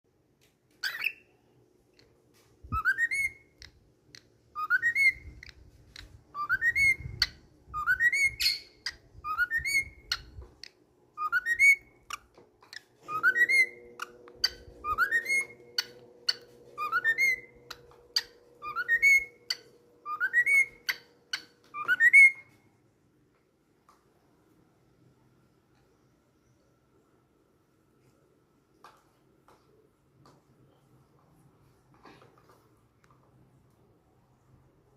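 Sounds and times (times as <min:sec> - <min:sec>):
bird whistling rising notes: 0:02.7 - 0:03.5, 0:04.6 - 0:05.4, 0:06.4 - 0:10.3, 0:11.2 - 0:12.0, 0:13.1 - 0:22.6.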